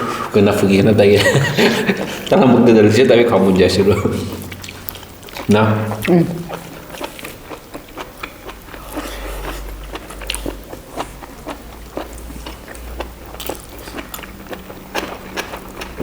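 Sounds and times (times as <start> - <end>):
wet chewing and crunching: 4.3 - 16.0.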